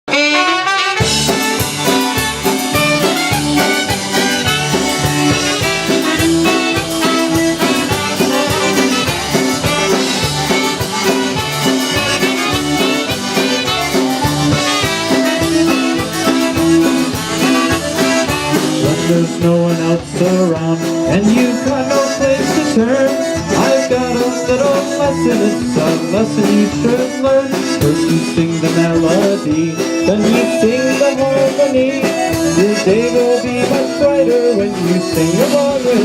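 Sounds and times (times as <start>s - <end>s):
accordion playing tune: 0.0s - 36.0s
steady drum beat: 0.8s - 36.0s.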